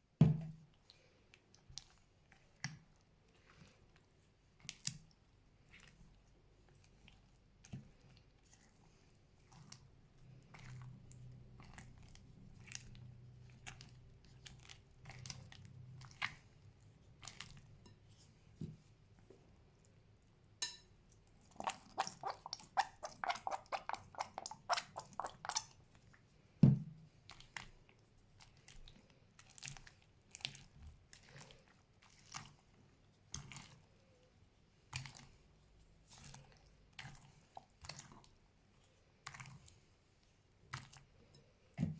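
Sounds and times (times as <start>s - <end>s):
thump: 0.2s - 0.6s, 26.6s - 26.9s
slime crackling: 21.6s - 25.8s.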